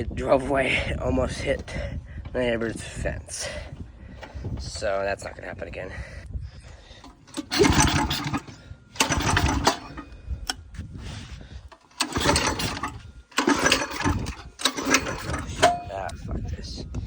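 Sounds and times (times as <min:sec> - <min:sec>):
small engine cranking and coughing: 0:07.0 - 0:10.6, 0:11.6 - 0:15.9.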